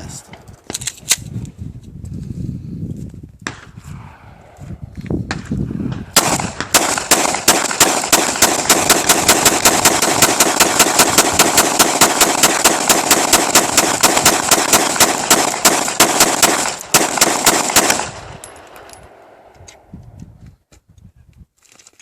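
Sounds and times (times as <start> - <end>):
pistol firing rapidly: 6.2 - 19.4.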